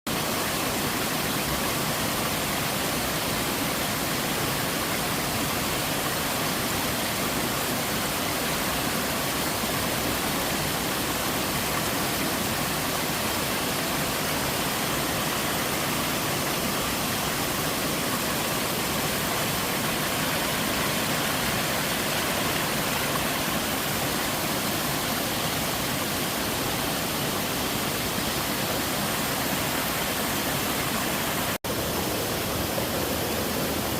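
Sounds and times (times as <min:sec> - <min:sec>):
small waterfall splashing: 0:00.1 - 0:33.9.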